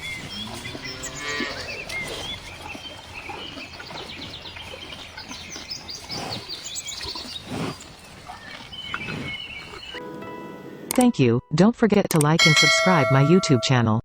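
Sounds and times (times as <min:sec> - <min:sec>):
birds chirping: 0:00.0 - 0:10.7
cow mooing: 0:00.2 - 0:02.3.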